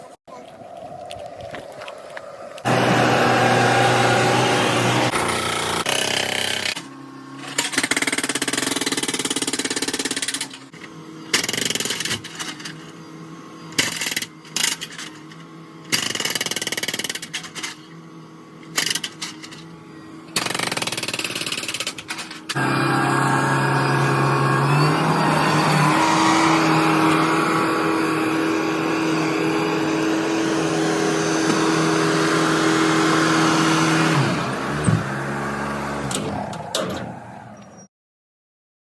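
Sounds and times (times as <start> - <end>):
diesel engine at high revs: 2.6 - 12.2, 22.5 - 37.9.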